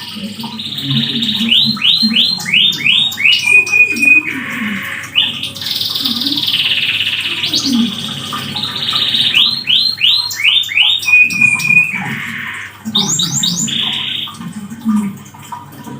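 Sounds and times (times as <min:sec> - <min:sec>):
canary singing: 0:00.0 - 0:14.4.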